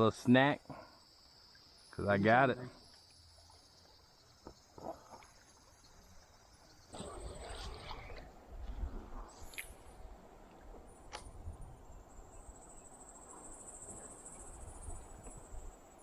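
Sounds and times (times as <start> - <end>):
wind rumble on microphone: 10.7 - 12.5.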